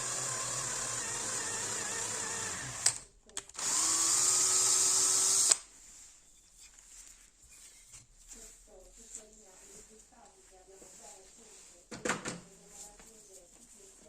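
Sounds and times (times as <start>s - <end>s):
electric drill running: 0.0s - 5.6s.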